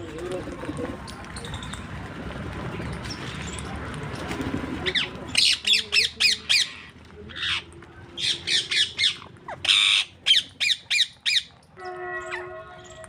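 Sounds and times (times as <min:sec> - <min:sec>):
parrots squawking: 0:04.9 - 0:13.0.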